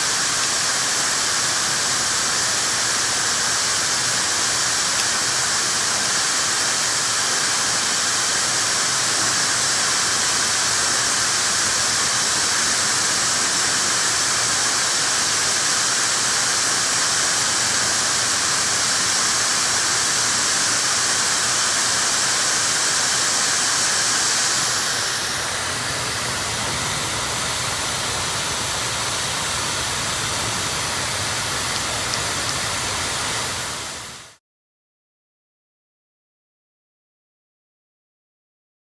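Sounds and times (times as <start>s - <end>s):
hair dryer blowing: 0.0s - 34.4s
thin high whine: 19.6s - 34.4s.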